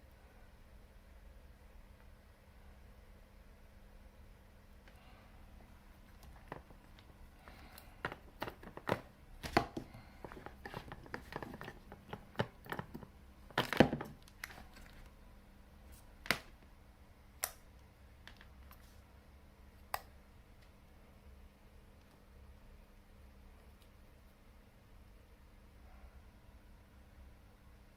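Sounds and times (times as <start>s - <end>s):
rustling and tearing: 6.0s - 15.1s.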